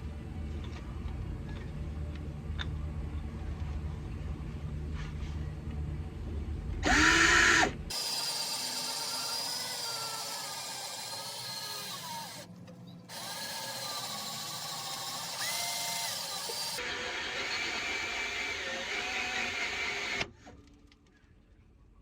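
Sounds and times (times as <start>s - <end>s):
power drill drilling rivets: 6.8s - 12.5s, 13.1s - 20.3s.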